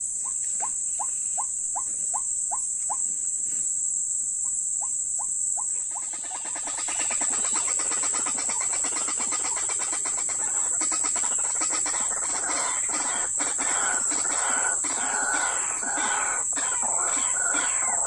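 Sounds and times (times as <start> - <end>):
chorus of overlapping bird calls: 5.7 - 18.0
waterhen calls: 5.9 - 18.0.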